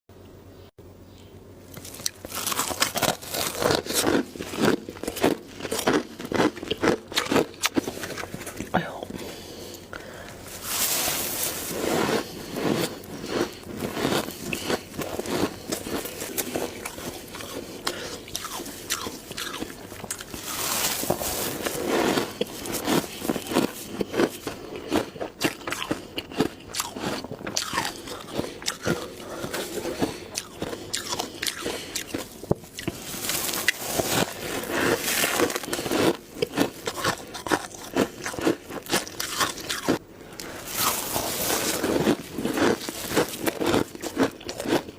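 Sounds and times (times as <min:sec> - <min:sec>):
person crunching ice: 0:01.8 - 0:44.9.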